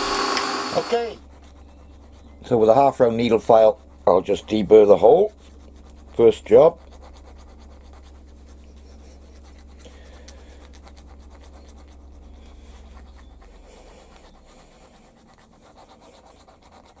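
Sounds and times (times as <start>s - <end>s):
low hum: 0.0s - 3.0s, 5.3s - 16.8s
file scraping metal: 0.0s - 6.9s.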